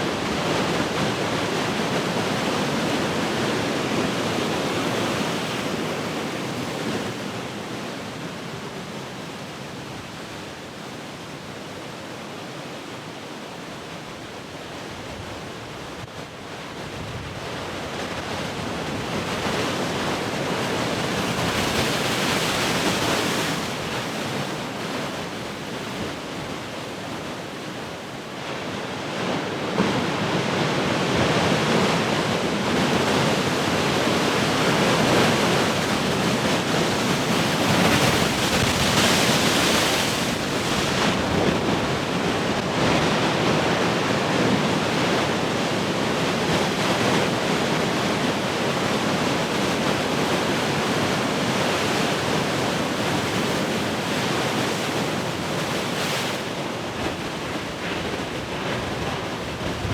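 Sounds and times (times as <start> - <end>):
ocean waves breaking: 17.5 - 59.9.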